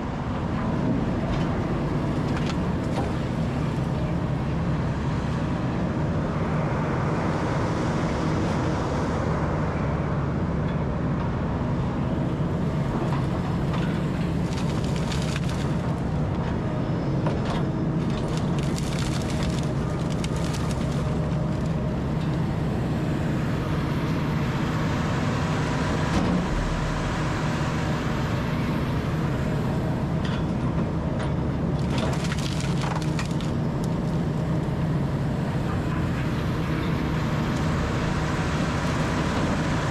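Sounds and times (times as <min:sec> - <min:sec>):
wood cracking and splintering: 0:13.8 - 0:16.1, 0:18.0 - 0:21.8, 0:31.8 - 0:34.1.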